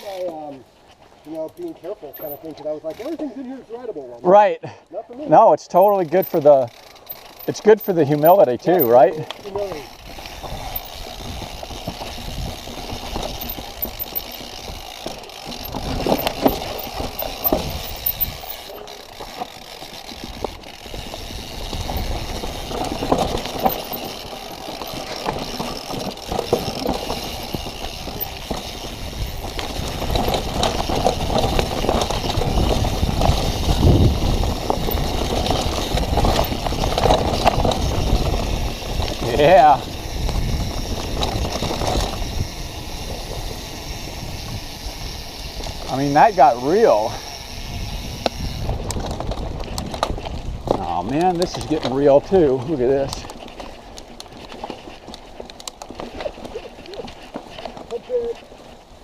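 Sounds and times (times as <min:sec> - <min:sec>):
bike rattling over bumps: 0:00.0 - 0:04.2, 0:05.6 - 0:59.0
bike tyres on rocky trail: 0:00.0 - 0:59.0.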